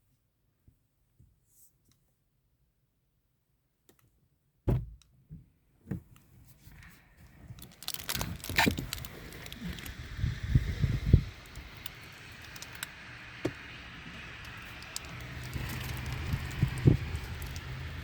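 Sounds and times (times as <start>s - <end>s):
sharp thump: 4.7s - 5.0s
faint clicks: 14.4s - 18.0s.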